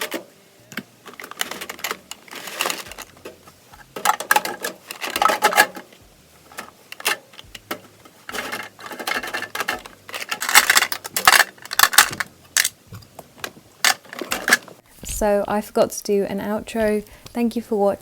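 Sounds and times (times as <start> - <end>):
small hard objects clattering: 0.0 - 15.3.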